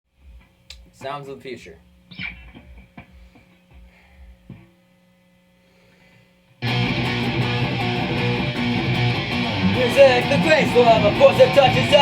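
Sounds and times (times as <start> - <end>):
punk rock song: 6.6 - 12.0.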